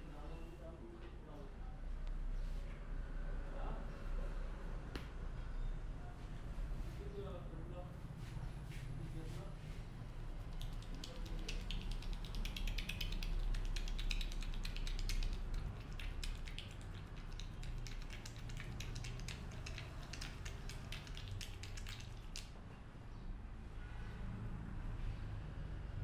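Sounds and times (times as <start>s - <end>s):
hair crackling between fingers: 10.2s - 22.6s.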